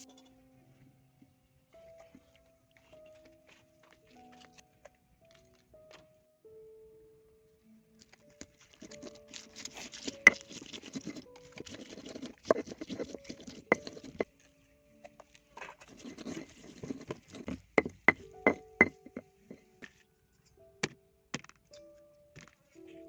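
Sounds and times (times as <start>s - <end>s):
faint background music: 0.0s - 23.0s
food preparation rustling: 8.0s - 20.1s
sharp taps and knocks: 16.0s - 19.3s.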